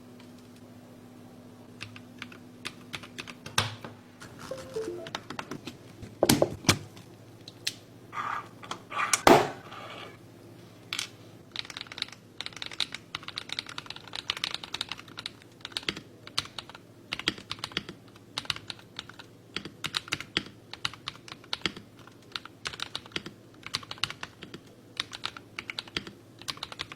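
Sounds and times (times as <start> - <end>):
typing on mechanical keyboard: 1.8 - 3.4, 10.9 - 26.9.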